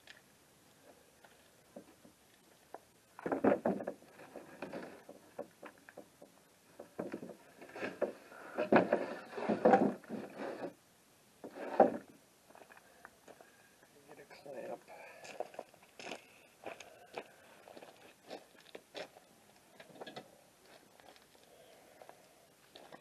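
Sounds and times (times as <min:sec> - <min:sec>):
wooden boards knocking and clattering: 0:03.2 - 0:10.3, 0:11.4 - 0:12.1.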